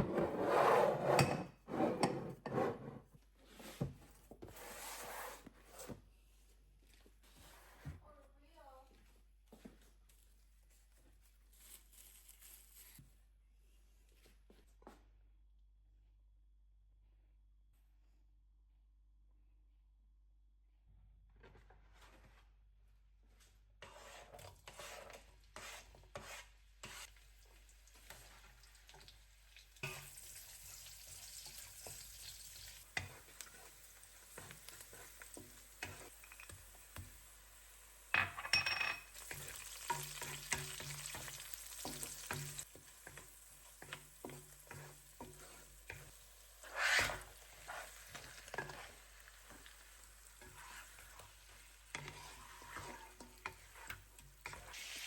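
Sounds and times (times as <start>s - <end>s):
utensil tapping and scraping pan: 23.8s - 27.2s, 29.8s - 30.2s, 32.8s - 37.2s, 38.2s - 55.0s
food sizzling in a frying pan: 27.2s - 55.0s.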